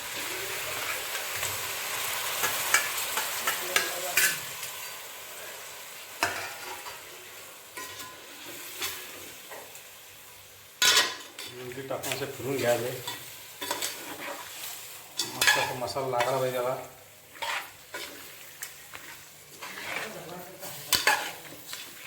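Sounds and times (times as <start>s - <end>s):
meat sizzling in hot oil: 0.0s - 22.0s.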